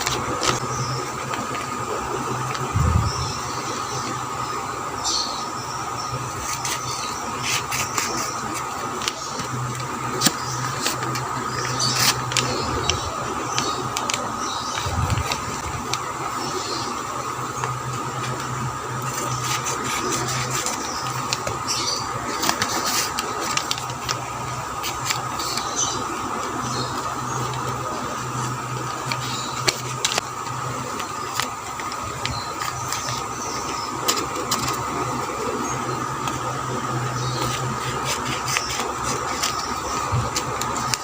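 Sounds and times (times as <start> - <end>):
steady hum: 0.0 - 41.0
packaging crinkling and clicking: 7.5 - 16.4, 17.6 - 35.6, 37.3 - 41.0.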